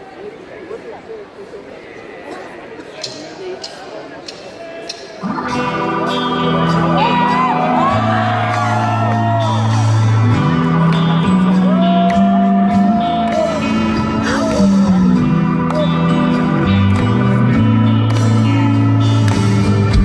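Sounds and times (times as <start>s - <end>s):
high gliding notes: 5.2s - 19.0s
bass notes: 5.2s - 20.0s
guitar chords: 5.2s - 20.0s.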